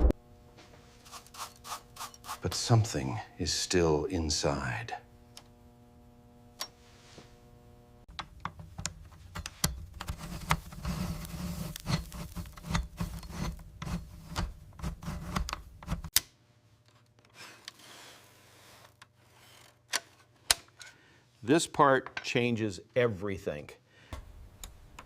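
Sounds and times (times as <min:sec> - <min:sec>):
metal rubbing and scraping: 0:00.9 - 0:02.6, 0:09.0 - 0:16.1.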